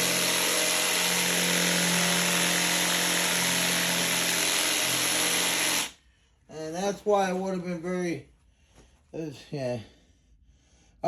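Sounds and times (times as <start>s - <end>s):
jigsaw blade rasping wood: 0.0s - 5.9s
motor hum of jigsaw: 0.0s - 6.0s.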